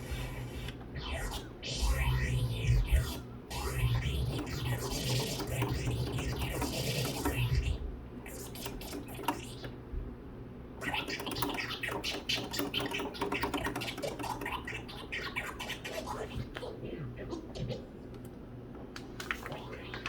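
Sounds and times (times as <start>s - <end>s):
vinyl record scratching: 0.0s - 9.7s, 10.8s - 17.9s
hands clicking on record and mixer: 4.1s - 9.8s, 10.8s - 16.7s.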